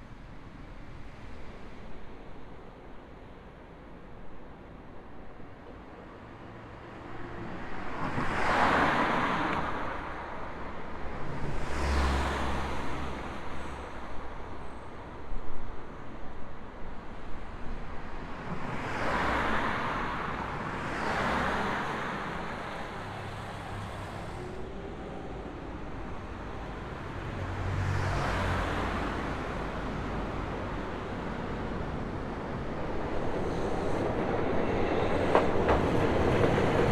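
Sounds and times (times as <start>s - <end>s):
vehicles passing: 17.5s - 36.9s.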